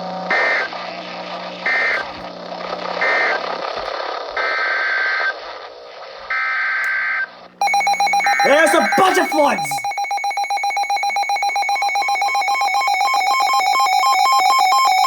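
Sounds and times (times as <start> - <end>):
digital data bursts: 7.6 - 13.3.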